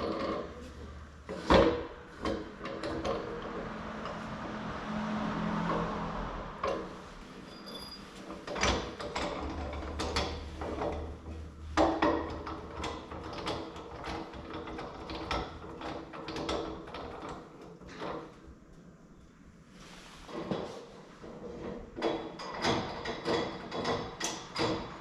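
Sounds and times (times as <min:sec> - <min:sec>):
irregular clicks and knocks: 0:08.3 - 0:18.4, 0:21.4 - 0:25.0.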